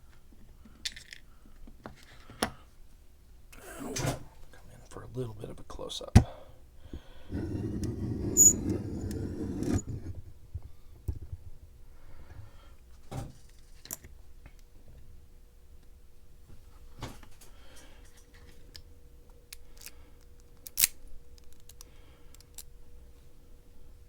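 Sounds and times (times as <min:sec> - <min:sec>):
hands rustling lock parts: 0:00.6 - 0:01.3, 0:19.5 - 0:22.8.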